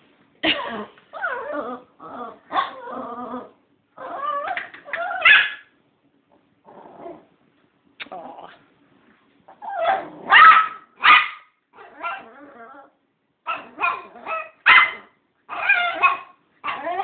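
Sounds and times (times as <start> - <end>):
dog howling moans: 1.2 - 5.2, 11.8 - 13.0
dog yipping: 4.0 - 5.7, 9.5 - 12.6, 13.5 - 17.0
dog grumbling: 6.6 - 7.3, 8.0 - 8.6
dog barking: 9.8 - 12.2, 13.5 - 16.8.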